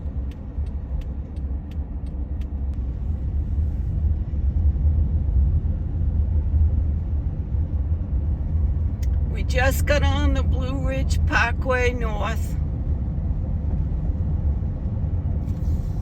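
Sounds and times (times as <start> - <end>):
turn signal ticking: 0.0 - 2.9
road and engine rumble in cabin: 0.0 - 16.0.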